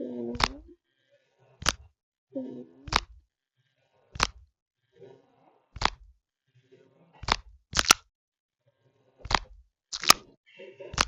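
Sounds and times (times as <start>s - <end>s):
squishy toy crunchy clicks: 0.4s - 0.6s, 1.6s - 1.8s, 2.9s - 3.2s, 4.2s - 4.4s, 5.8s - 6.0s, 7.2s - 8.0s, 9.3s - 10.2s.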